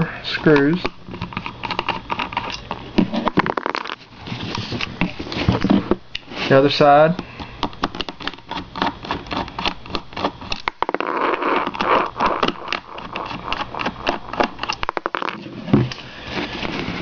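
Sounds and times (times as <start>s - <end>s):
screwdriver clicking and scraping: 0.5s - 4.0s, 7.6s - 11.0s, 11.6s - 15.4s.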